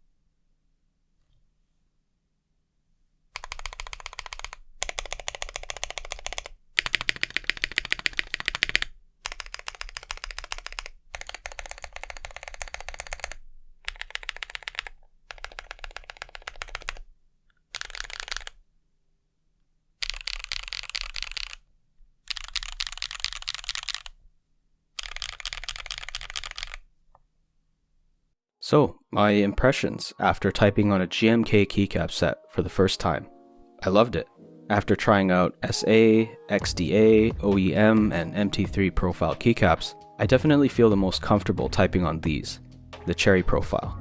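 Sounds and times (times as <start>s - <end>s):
mechanical keyboard typing: 3.4s - 17.1s, 17.7s - 18.6s, 20.0s - 21.6s, 22.3s - 24.2s, 25.0s - 26.9s.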